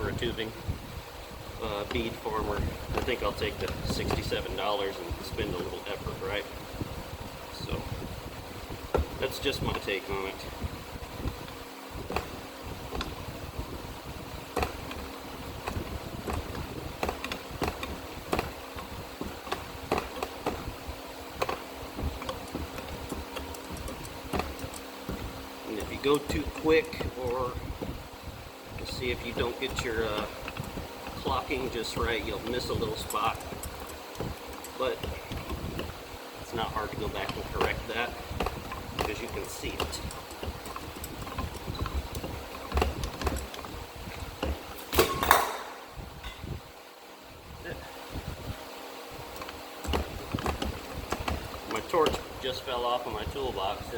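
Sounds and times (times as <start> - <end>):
metallic clicks and knocks: 14.5 - 27.9, 28.7 - 36.0, 36.6 - 46.5, 49.3 - 52.3
loud sharp metal clanks: 44.8 - 46.4.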